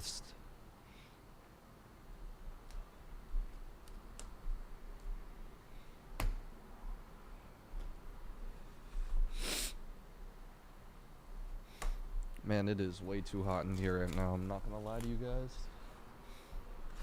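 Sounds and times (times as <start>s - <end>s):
low steady hum: 0.0s - 17.0s
cards and packaging clicking: 13.5s - 15.3s
packaging rustle: 13.5s - 15.7s.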